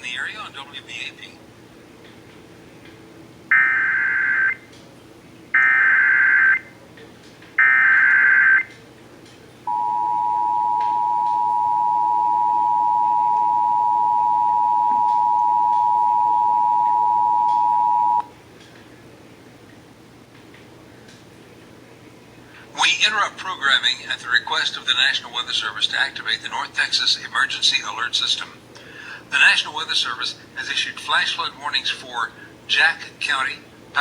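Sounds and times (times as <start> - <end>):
two-tone alert signal: 9.7 - 18.2.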